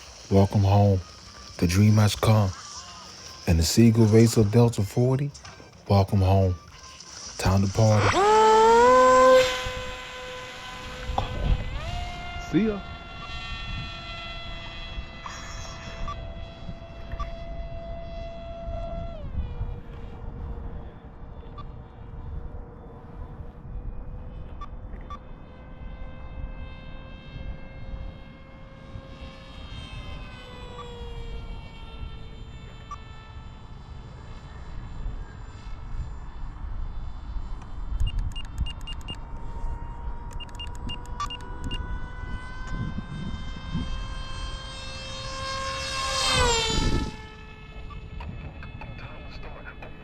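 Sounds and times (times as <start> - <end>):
model airplane motor whining: 0.0 - 50.0.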